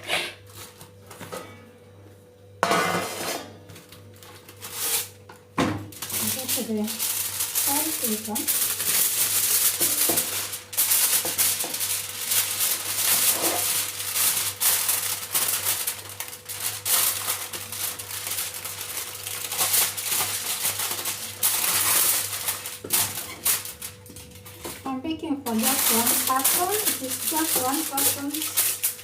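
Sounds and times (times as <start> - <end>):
packaging crinkling: 3.8 - 5.2, 5.9 - 24.8, 25.5 - 29.0
utensils rattling and clicking: 25.5 - 29.0.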